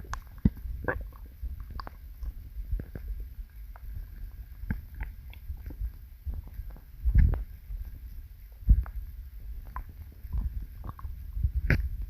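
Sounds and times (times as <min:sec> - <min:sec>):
gurgling pops and clicks: 0:00.0 - 0:03.1, 0:09.6 - 0:12.0
stomach growling: 0:00.0 - 0:12.0.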